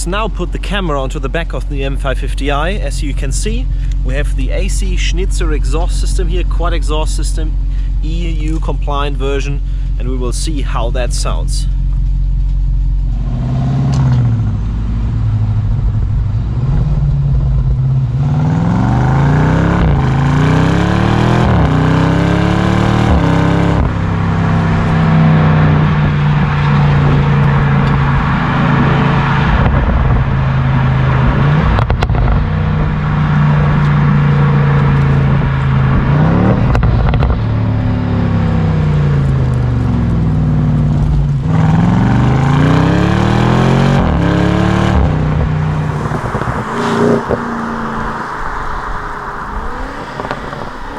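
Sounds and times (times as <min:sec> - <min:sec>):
car engine revving through gears: 0:13.1 - 0:50.9.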